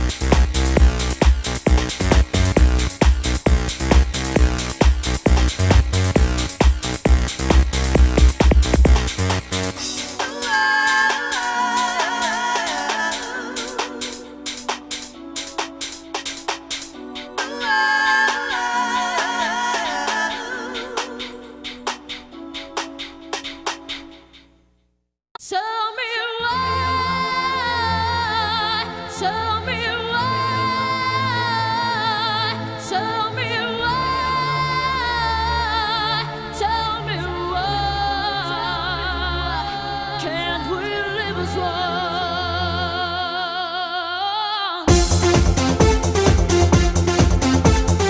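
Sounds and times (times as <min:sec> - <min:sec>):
synth chords and bass: 0:00.0 - 0:15.9, 0:44.9 - 0:48.0
dense dance beat: 0:00.0 - 0:21.2, 0:44.9 - 0:48.0.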